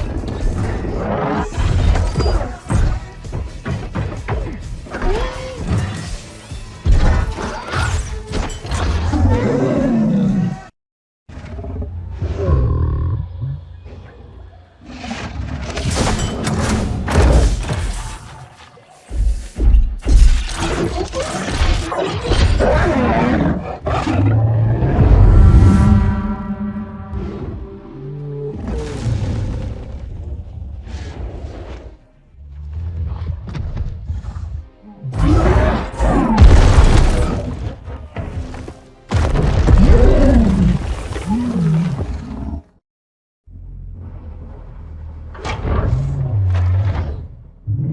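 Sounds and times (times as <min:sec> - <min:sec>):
dramatic film score: 0:00.0 - 0:10.7, 0:11.4 - 0:42.8
giant ape roaring: 0:09.1 - 0:10.7, 0:11.4 - 0:15.4, 0:20.6 - 0:31.9, 0:34.8 - 0:37.5.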